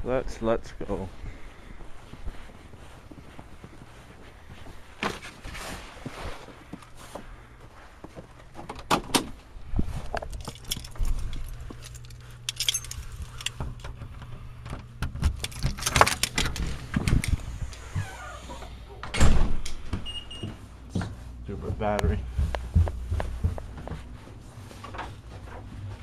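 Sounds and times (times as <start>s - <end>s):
low steady hum: 0.0s - 26.0s
keys jangling: 10.3s - 13.6s, 15.3s - 16.7s.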